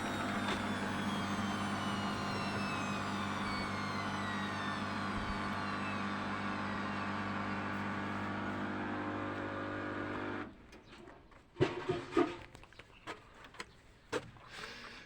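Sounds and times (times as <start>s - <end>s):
washing machine drum whine: 0.0s - 9.0s
washing machine motor hum: 0.0s - 10.5s.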